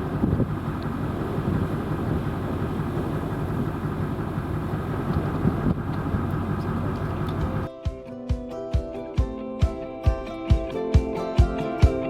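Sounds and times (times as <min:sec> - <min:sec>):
low rumbling noise: 0:00.0 - 0:07.7
strummed guitar music: 0:06.8 - 0:12.0.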